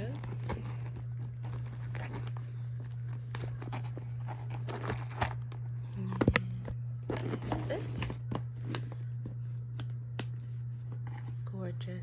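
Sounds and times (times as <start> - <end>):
items rustling in handbag: 0.0 - 5.5, 7.0 - 9.3
low electrical hum: 0.0 - 12.0.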